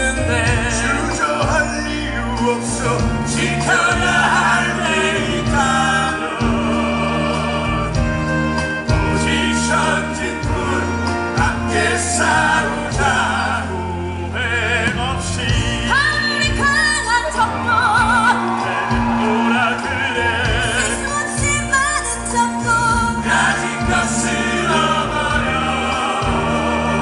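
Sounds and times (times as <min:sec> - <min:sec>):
cast singing with orchestra: 0:00.0 - 0:27.0.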